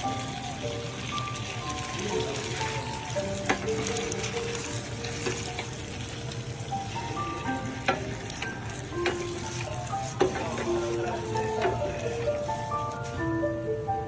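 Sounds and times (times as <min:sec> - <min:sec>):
food sizzling in a pan: 0:00.0 - 0:14.0
utensil knocking against pan: 0:07.6 - 0:12.2.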